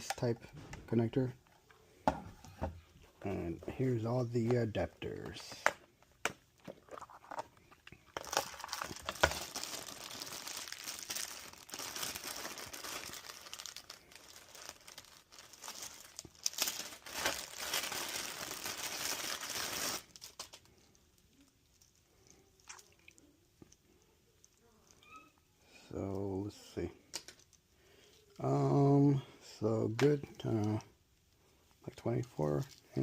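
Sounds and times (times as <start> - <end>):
plastic packaging crinkling: 6.6 - 23.0.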